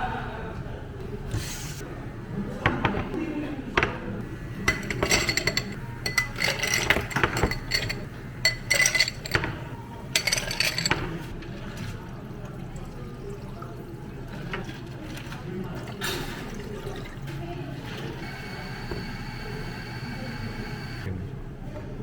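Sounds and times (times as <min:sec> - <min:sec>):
glassware and utensils clinking: 0:04.5 - 0:11.8.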